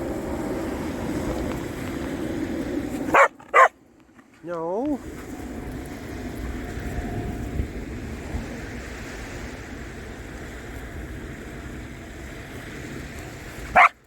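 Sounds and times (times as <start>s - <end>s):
dog barking: 3.1s - 3.8s, 13.7s - 14.0s
ocean surf: 4.5s - 14.0s
wind on microphone: 5.0s - 13.9s.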